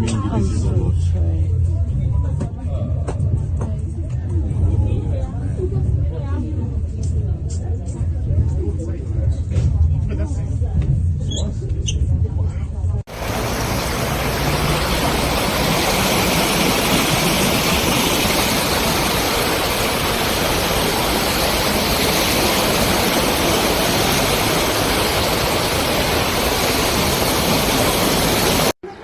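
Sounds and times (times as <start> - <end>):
rushing floodwater roar: 13.1 - 28.8.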